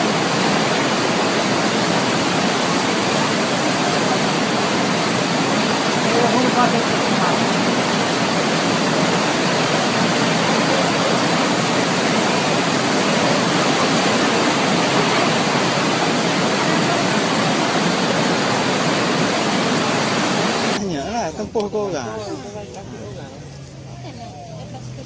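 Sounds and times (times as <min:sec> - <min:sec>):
floodwater rushing: 0:00.0 - 0:20.8.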